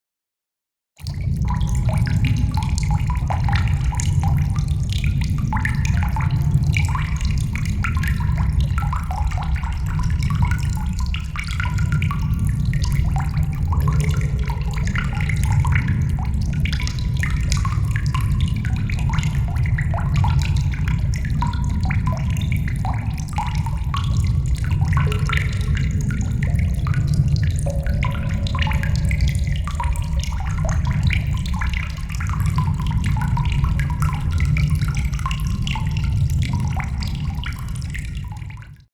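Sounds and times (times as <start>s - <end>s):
water dripping in a cave: 1.0s - 38.9s
low rumble: 12.3s - 37.9s.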